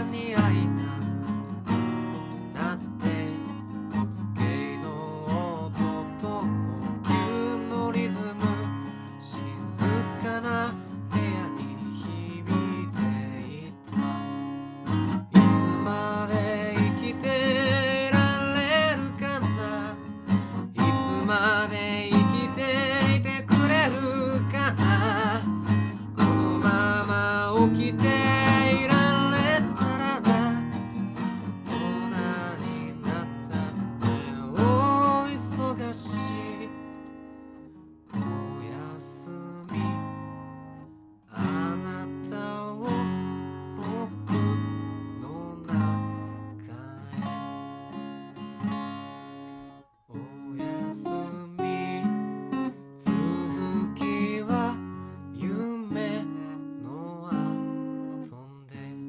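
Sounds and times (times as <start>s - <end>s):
man singing: 0.0s - 1.5s, 2.4s - 14.3s, 14.9s - 37.2s, 38.2s - 40.4s, 41.3s - 47.6s, 50.1s - 59.0s
acoustic guitar strummed and picked: 0.0s - 59.0s.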